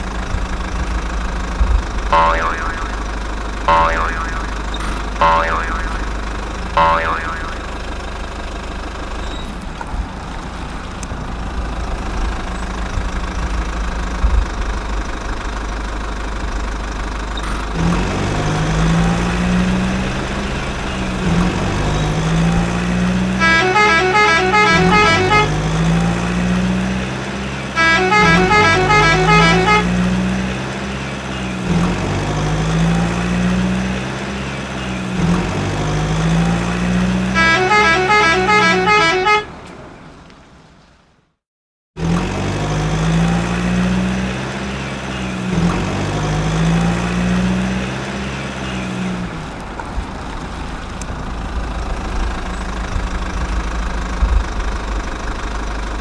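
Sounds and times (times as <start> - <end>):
low engine rising and falling: 0.0 - 39.6
multi-tone truck horn tune: 2.1 - 7.7, 22.2 - 27.0, 27.6 - 30.6, 37.0 - 39.6.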